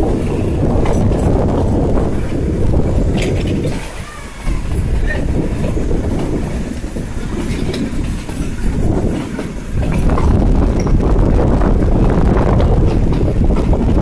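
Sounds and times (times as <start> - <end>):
train running along track: 0.0 - 14.0.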